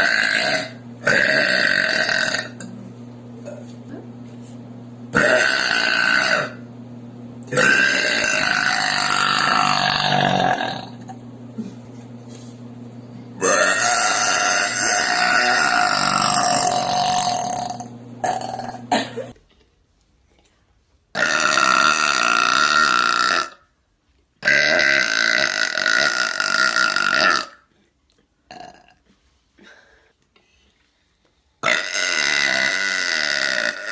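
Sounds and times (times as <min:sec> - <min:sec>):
woman burping loudly: 0:00.0 - 0:02.7, 0:05.1 - 0:06.6, 0:07.5 - 0:11.2, 0:13.4 - 0:19.4, 0:21.2 - 0:23.6, 0:24.4 - 0:27.6, 0:28.5 - 0:29.0, 0:31.6 - 0:33.9.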